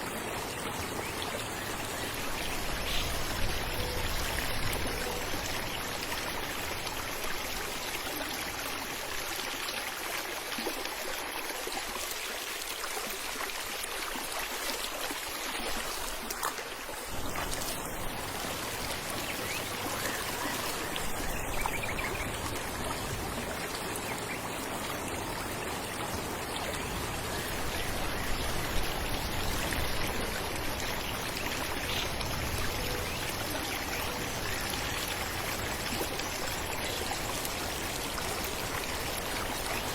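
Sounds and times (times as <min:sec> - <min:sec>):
falling water rushing and splashing: 0:00.0 - 0:39.9.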